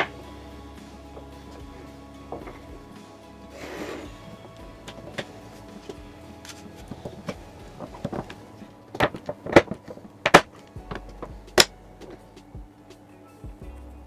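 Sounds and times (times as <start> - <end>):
faint background music: 0.0 - 14.0.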